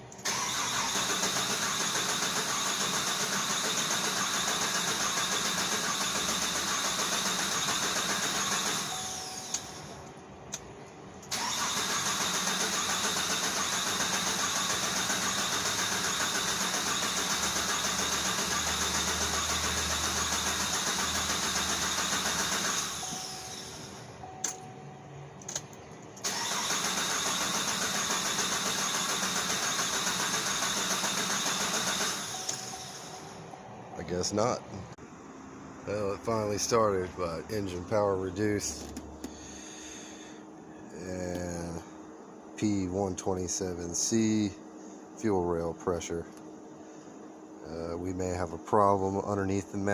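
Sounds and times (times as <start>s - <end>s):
car engine cranking: 0.1s - 9.8s, 11.2s - 24.6s, 25.4s - 33.2s.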